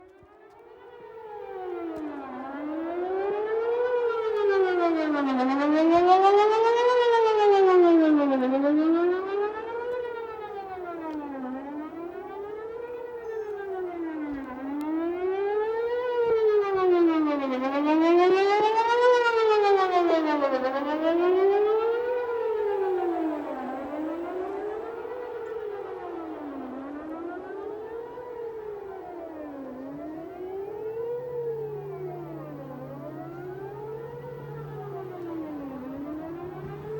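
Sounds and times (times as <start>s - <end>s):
electronic siren gliding up and down: 0.0s - 36.9s.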